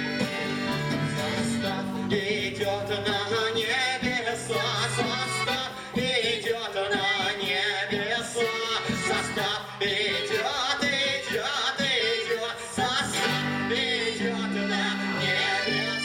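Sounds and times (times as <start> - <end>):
wordless song melody: 0.0 - 16.0.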